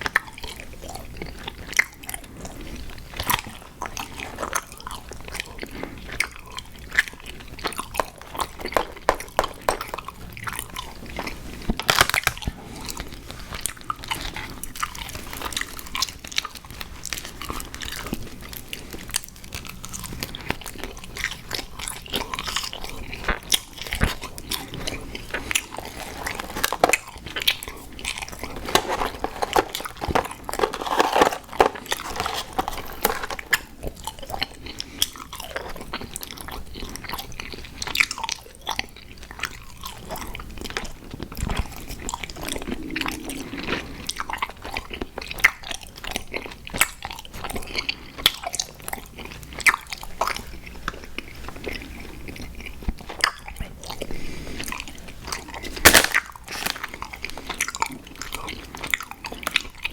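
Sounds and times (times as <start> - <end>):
chewing and crunching: 0.0 - 59.9
wet mouth sounds: 42.3 - 44.5.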